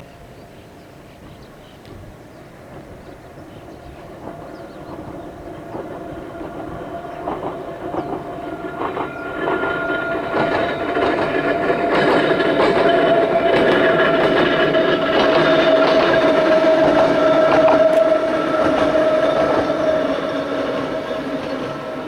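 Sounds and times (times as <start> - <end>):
electric train passing: 0.1 - 22.0
wheels clacking over rail joints: 1.3 - 22.0
steady motor whine: 4.9 - 22.0.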